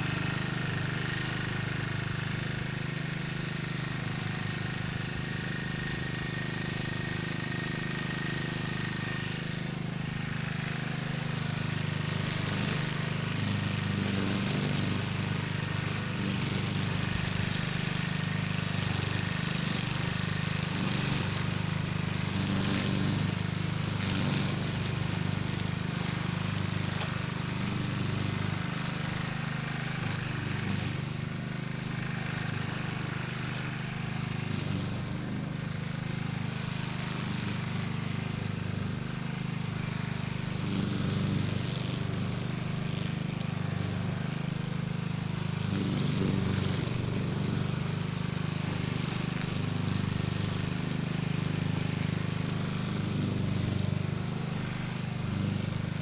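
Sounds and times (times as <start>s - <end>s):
string trimmer engine running: 0.0s - 56.0s.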